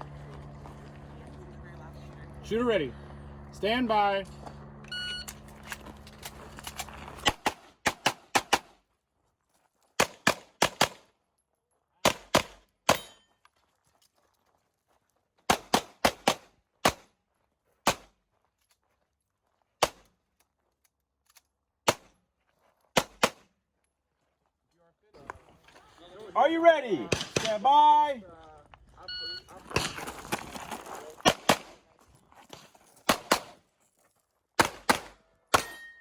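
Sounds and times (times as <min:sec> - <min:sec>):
pistol shots echoing: 0:27.0 - 0:27.6, 0:33.1 - 0:33.6, 0:34.6 - 0:36.0.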